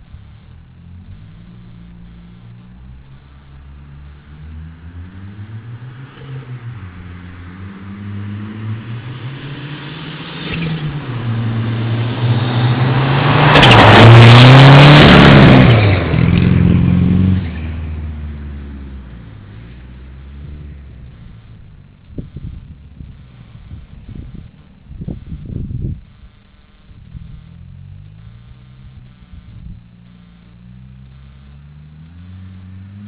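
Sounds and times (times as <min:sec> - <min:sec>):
car engine revving past: 0:00.9 - 0:22.6, 0:30.6 - 0:33.0.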